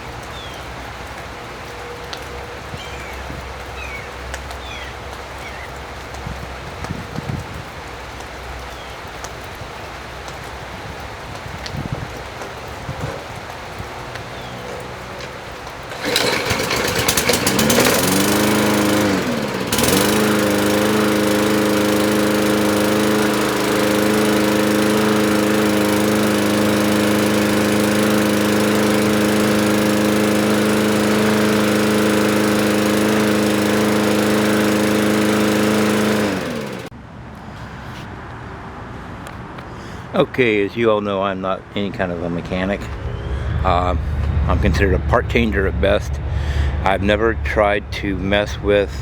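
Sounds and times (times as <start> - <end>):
lawn mower engine running: 10.3 - 36.9, 41.7 - 49.0.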